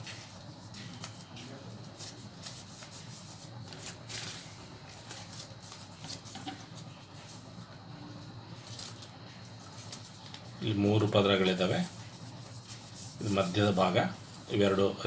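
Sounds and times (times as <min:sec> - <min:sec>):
paper folding and crinkling: 0:00.0 - 0:07.8, 0:08.4 - 0:14.8.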